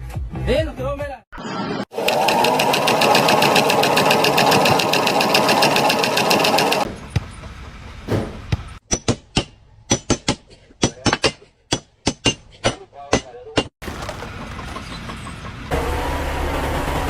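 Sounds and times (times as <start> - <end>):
rapidly pulsing machine: 1.9 - 6.9.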